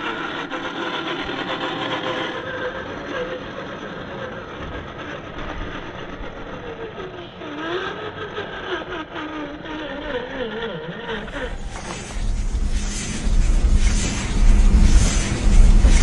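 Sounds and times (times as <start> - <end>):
motor and drivetrain whining: 11.2 - 16.0.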